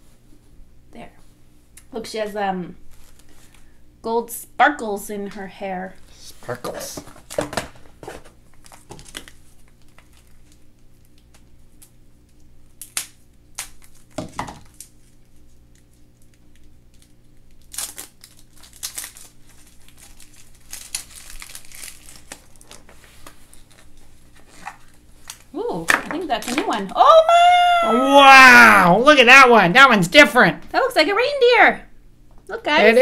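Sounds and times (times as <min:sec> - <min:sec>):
wrapper crinkling and tearing: 0:02.9 - 0:03.6, 0:06.7 - 0:25.6.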